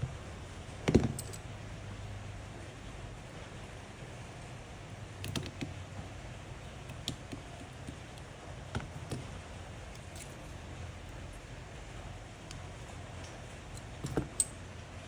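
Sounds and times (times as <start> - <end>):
steady low hum: 0.0 - 15.0
small tools clicking on phone parts: 5.2 - 5.8.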